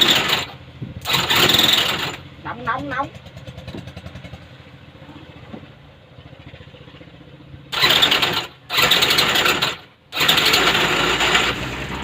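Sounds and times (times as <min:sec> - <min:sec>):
brush-cutter engine revving: 0:00.0 - 0:02.2, 0:07.7 - 0:12.0
person talking: 0:02.4 - 0:03.2.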